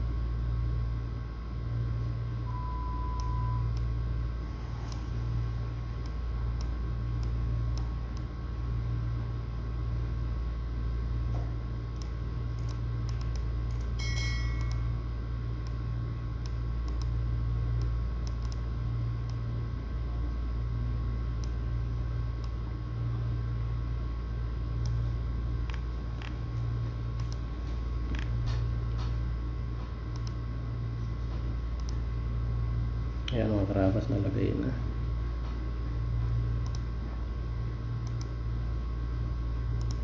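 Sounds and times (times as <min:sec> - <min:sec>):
low electrical hum: 0:00.0 - 0:40.0
short beep: 0:02.5 - 0:03.7.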